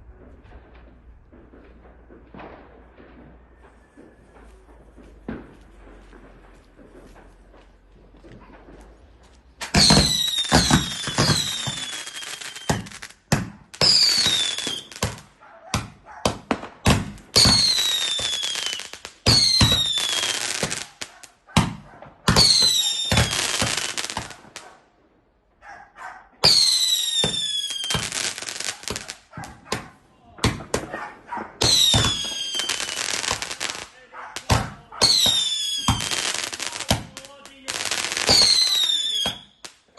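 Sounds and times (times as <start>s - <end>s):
firework crackling: 0.0s - 24.8s, 26.4s - 39.9s
firework bangs: 0.0s - 25.6s, 26.4s - 39.9s.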